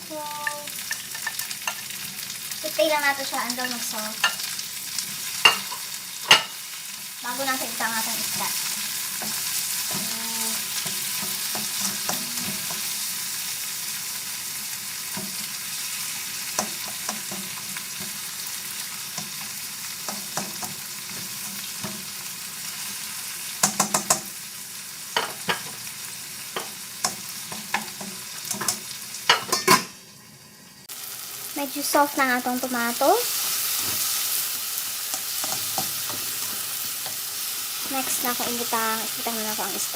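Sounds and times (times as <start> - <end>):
food sizzling in frying pan: 0.0 - 39.9
utensil clicking against pan: 23.6 - 24.3.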